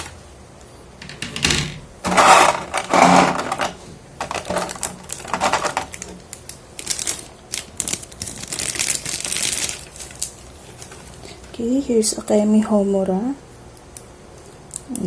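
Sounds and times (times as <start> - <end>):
plastic parts clicking: 1.0 - 8.4
plastic packaging crinkling: 2.1 - 11.4.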